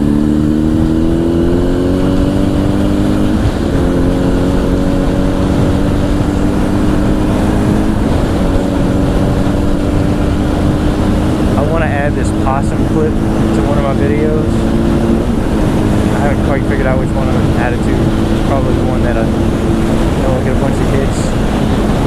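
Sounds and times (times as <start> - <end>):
motorcycle engine accelerating: 0.0 - 22.0
wind noise on microphone: 0.0 - 22.0.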